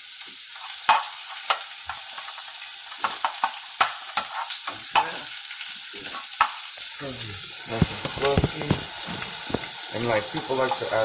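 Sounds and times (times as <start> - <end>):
eggs sizzling in a frying pan: 0.0 - 11.0
utensil scraping a pan: 7.6 - 9.8.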